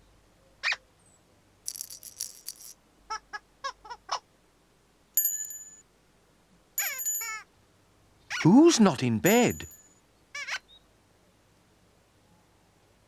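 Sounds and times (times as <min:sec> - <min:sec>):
cartoon rattle: 0:01.7 - 0:02.8, 0:06.8 - 0:07.4
bell-like ding: 0:05.2 - 0:05.8, 0:06.8 - 0:07.4, 0:09.3 - 0:09.8.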